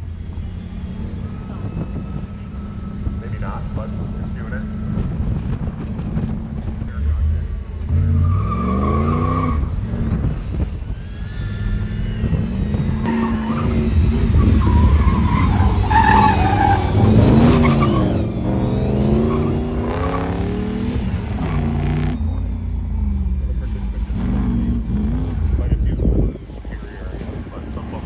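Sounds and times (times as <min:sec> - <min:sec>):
car engine revving: 0:00.0 - 0:12.0, 0:13.0 - 0:28.0
tires squealing: 0:06.9 - 0:28.0.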